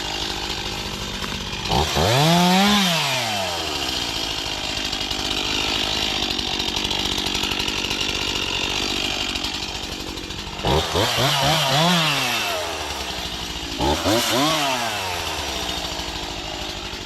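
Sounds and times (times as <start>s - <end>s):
chainsaw idling and revving: 0.0s - 17.0s.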